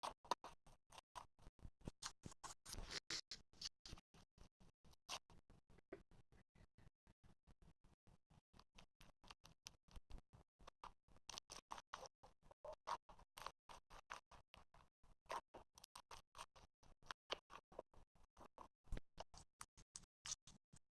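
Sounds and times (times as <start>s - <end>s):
slime squishing with clicks and pops: 8.6s - 20.8s.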